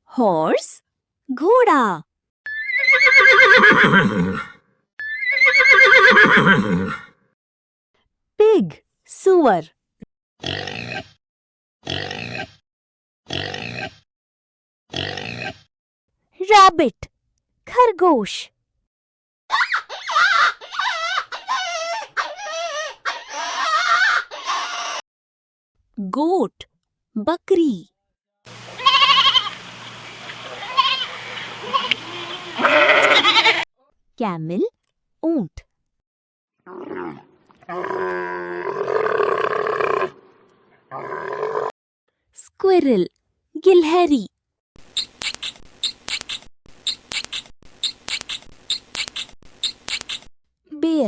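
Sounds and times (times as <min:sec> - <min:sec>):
horse whinnying: 0:02.5 - 0:07.1, 0:32.6 - 0:33.6.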